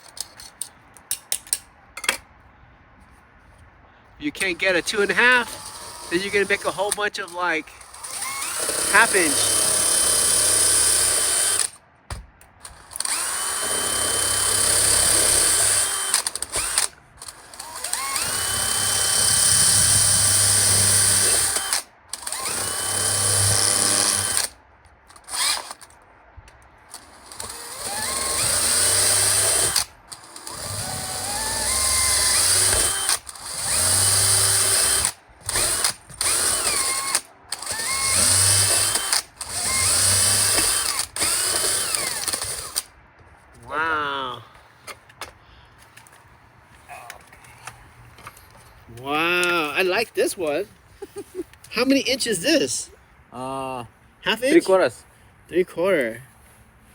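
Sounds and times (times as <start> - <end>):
electric drill boring holes: 4.6 - 7.0, 7.8 - 11.7, 12.7 - 24.5, 25.2 - 25.9, 27.0 - 42.9.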